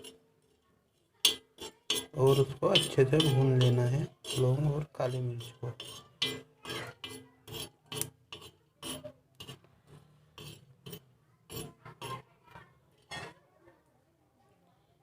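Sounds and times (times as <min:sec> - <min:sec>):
metal utensil scraping spices on griddle: 0:00.0 - 0:13.3.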